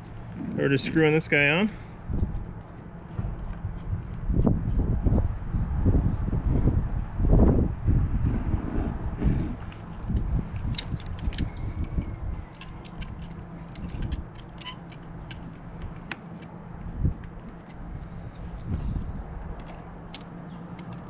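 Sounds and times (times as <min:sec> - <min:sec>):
wind rumble on microphone: 0:00.0 - 0:21.0
metal hose fitting clicking: 0:10.1 - 0:16.2.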